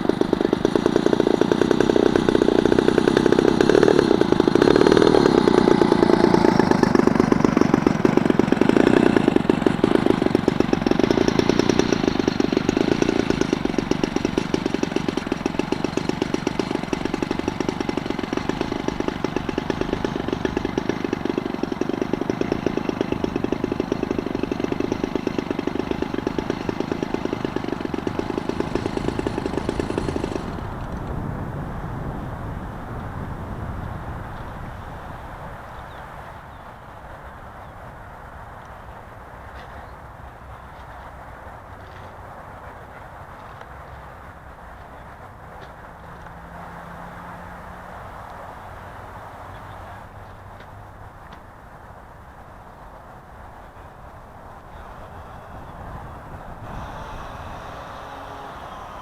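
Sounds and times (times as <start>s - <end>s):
model glider motor buzzing: 0.0s - 31.8s, 38.6s - 50.7s, 53.6s - 59.0s.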